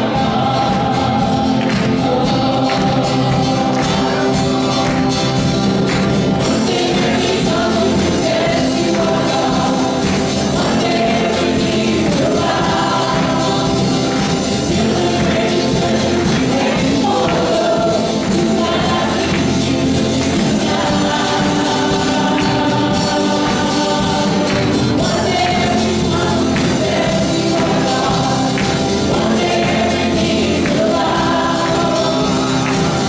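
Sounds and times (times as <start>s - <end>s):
gospel band and singers: 0.0s - 33.0s.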